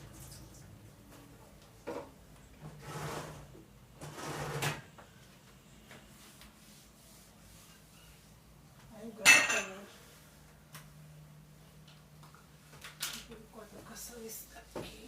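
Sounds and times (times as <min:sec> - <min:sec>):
household items sliding and rustling: 0:02.6 - 0:04.8.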